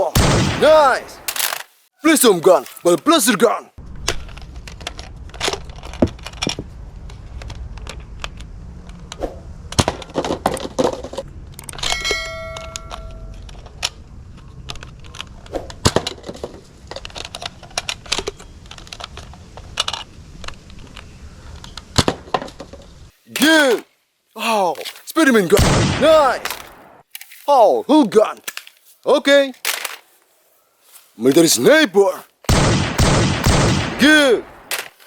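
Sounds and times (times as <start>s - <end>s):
short ringing ding: 11.9s - 13.3s.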